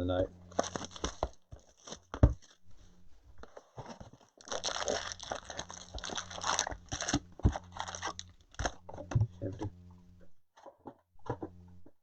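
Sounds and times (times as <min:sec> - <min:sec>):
plastic wrapping crinkling and tearing: 0:00.5 - 0:02.6, 0:03.8 - 0:08.9.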